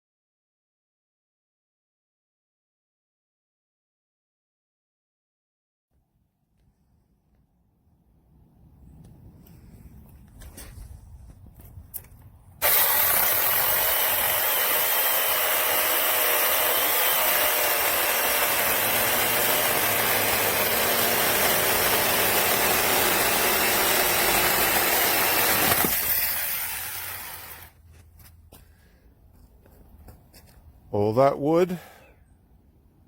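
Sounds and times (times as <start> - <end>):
mini chainsaw cutting wood: 12.6 - 27.8.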